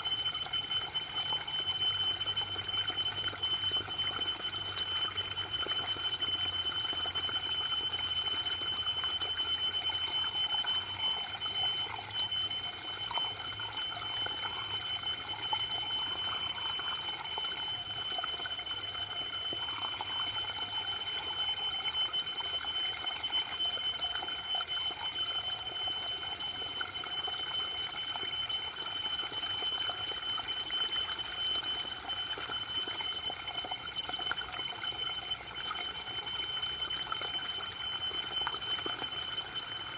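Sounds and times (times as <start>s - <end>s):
constant high tone: 0.0s - 39.9s.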